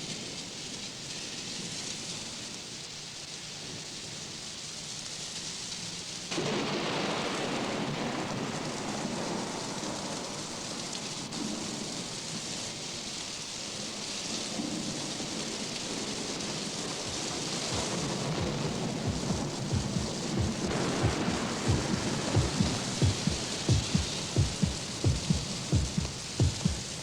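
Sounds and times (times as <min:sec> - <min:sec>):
steady rain: 0:00.0 - 0:27.0
thunder rumbling: 0:16.3 - 0:27.0.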